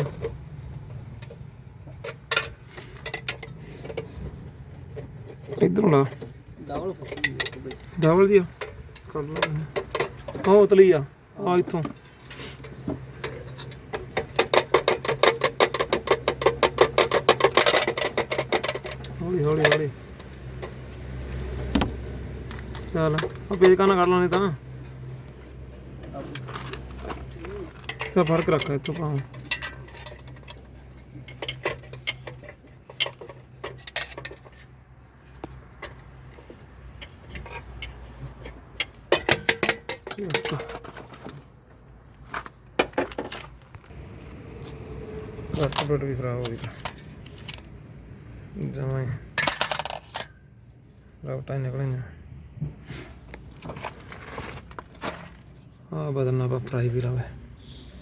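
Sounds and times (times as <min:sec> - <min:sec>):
metal tools clinking: 0:01.2 - 0:10.9, 0:11.5 - 0:34.8, 0:35.4 - 0:41.6, 0:48.8 - 0:51.0.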